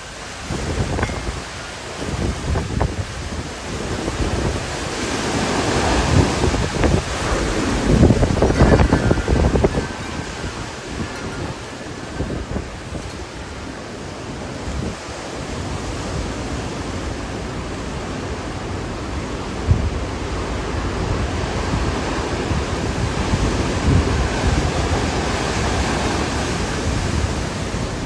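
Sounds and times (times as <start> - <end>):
strong wind buffeting microphone: 0.0 - 28.0.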